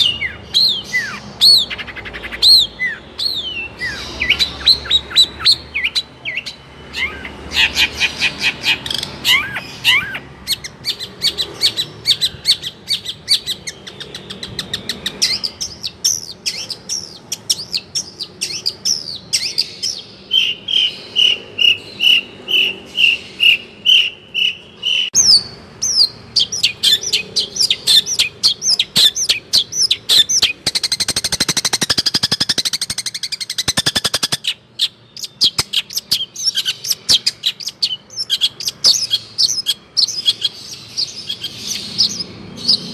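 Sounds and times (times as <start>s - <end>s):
bird singing chirps and whistles: 0.0s - 42.9s.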